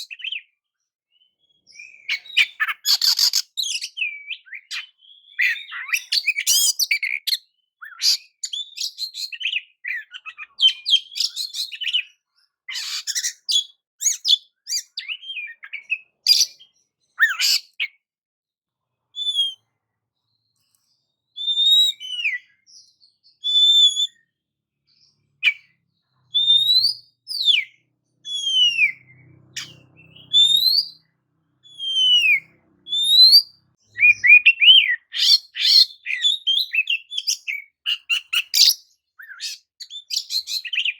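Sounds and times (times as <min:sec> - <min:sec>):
bird chattering song: 0:00.0 - 0:18.0, 0:19.1 - 0:40.9.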